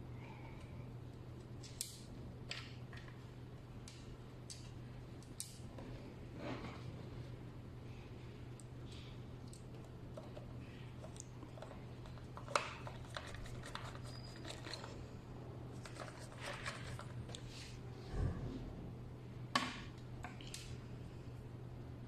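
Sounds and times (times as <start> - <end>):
steady low hum: 0.0 - 22.0
hardware clicks and scrapes: 10.2 - 15.1.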